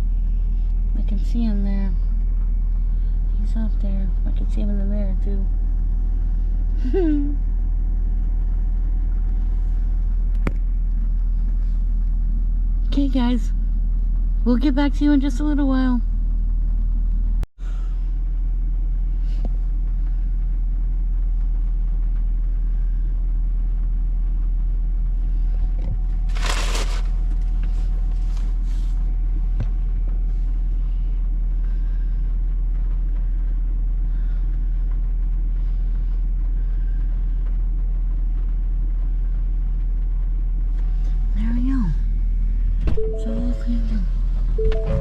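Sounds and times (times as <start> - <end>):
vehicle idling rumble: 0.0 - 45.0
rustling: 26.1 - 29.0.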